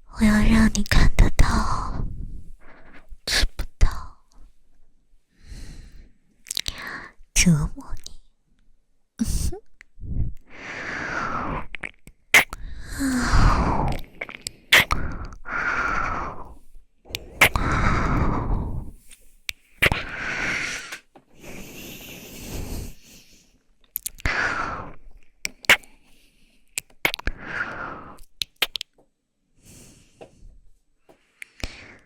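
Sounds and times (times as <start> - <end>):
woman breathing into microphone: 5.4 - 7.2, 14.9 - 23.5.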